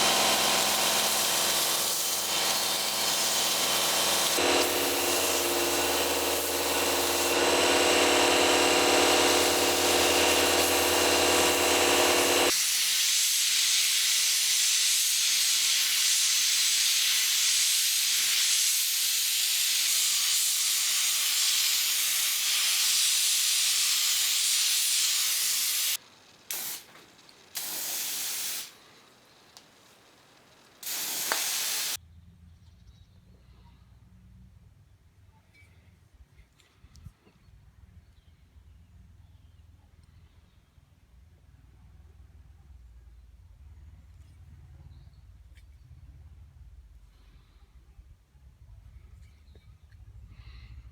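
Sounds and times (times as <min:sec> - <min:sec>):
motor humming: 0:00.0 - 0:12.5
loud hiss: 0:00.0 - 0:32.0.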